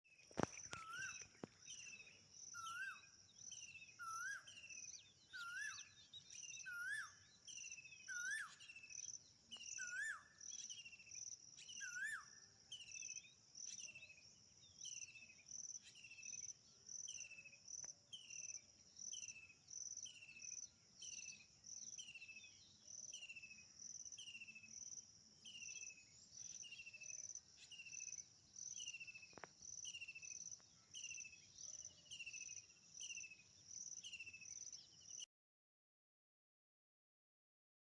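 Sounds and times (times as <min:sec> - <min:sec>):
lower rising bird call: 0:00.4 - 0:02.0, 0:02.6 - 0:03.1.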